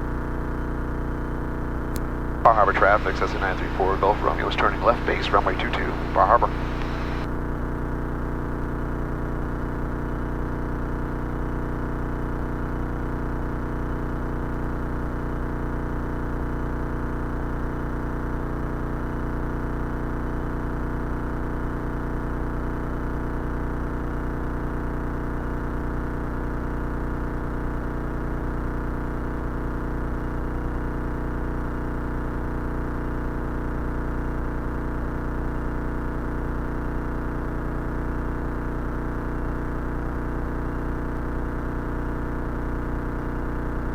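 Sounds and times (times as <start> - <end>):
light aircraft engine droning: 2.4 - 7.3.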